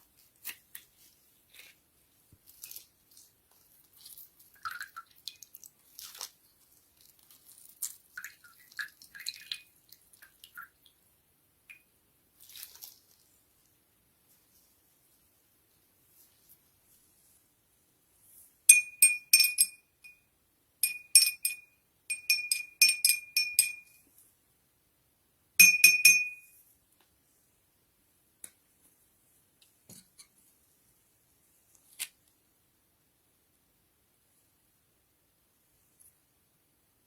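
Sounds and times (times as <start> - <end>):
spoon clinking against glass: 18.7 - 20.2, 20.8 - 24.0, 25.6 - 26.5.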